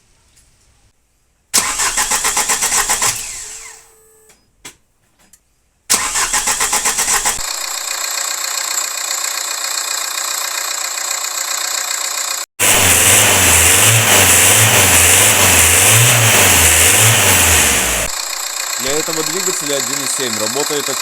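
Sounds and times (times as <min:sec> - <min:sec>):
starter motor cranking: 0:01.6 - 0:03.9, 0:05.9 - 0:07.8, 0:12.6 - 0:21.0
diesel engine idling: 0:07.5 - 0:21.0.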